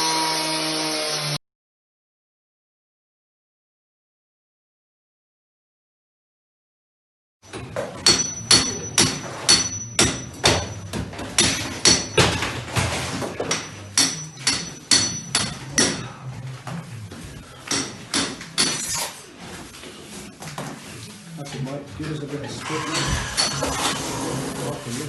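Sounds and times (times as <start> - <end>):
hammer blows with metallic ring: 8.0 - 12.5, 13.4 - 16.2.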